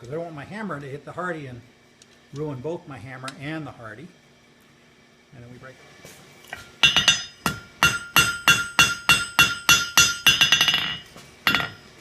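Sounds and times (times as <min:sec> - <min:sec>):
hammer striking iron on anvil: 0:06.5 - 0:11.9.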